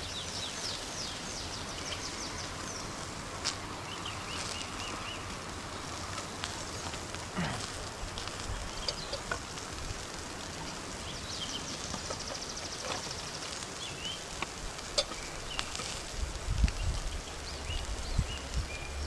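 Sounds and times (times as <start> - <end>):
campfire crackling: 0.0 - 19.0
small birds chirping: 0.0 - 19.0.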